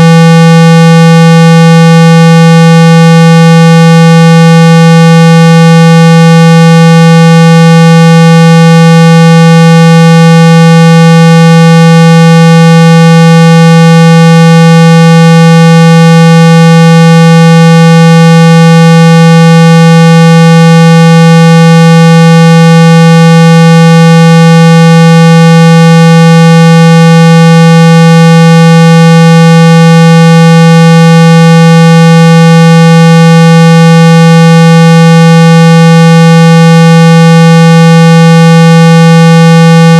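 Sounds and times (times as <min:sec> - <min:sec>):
low buzzy test tone: 0:00.0 - 0:39.9.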